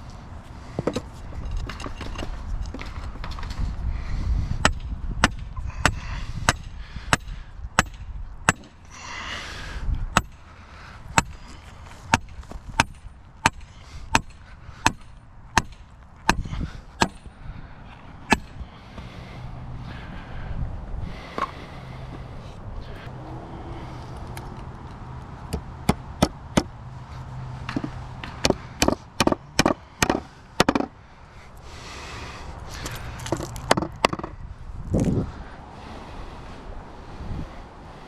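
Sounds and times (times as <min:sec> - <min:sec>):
sharp knocks: 0:27.7 - 0:30.9.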